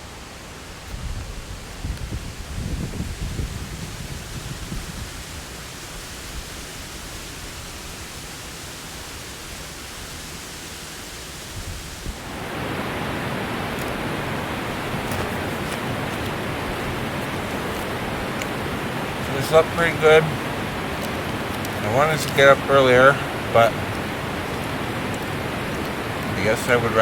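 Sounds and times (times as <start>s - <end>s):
outdoor rushing noise: 11.0s - 27.0s.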